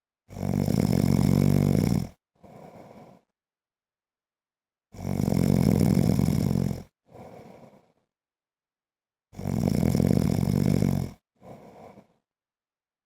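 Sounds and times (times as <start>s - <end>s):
man snoring: 0.3s - 3.2s, 4.9s - 8.0s, 9.4s - 12.2s
soft breath: 2.4s - 3.4s, 7.1s - 8.2s, 11.4s - 12.3s.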